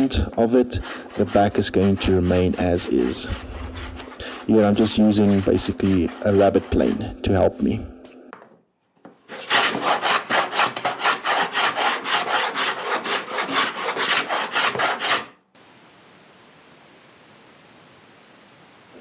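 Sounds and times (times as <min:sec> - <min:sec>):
hand tool strokes on wood: 0:00.0 - 0:07.1, 0:09.3 - 0:15.3
faint steady hiss: 0:15.5 - 0:19.0.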